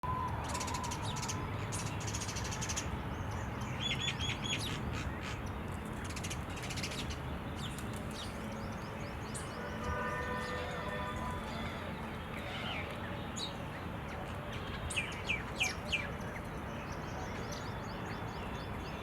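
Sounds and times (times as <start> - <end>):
birds trilling: 9.2 - 13.5.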